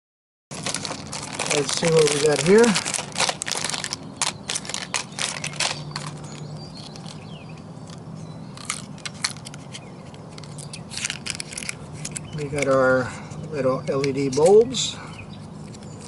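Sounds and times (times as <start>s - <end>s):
packaging crinkling: 0.5s - 12.7s.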